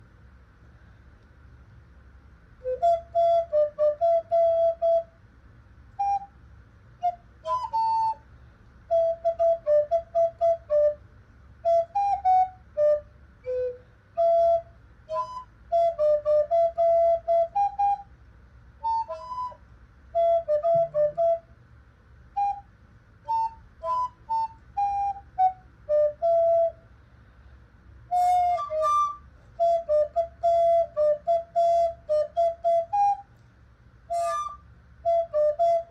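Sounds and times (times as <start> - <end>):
recorder playing melody: 18.8 - 19.6, 20.2 - 21.4, 23.2 - 26.8, 28.1 - 33.2, 34.1 - 35.9.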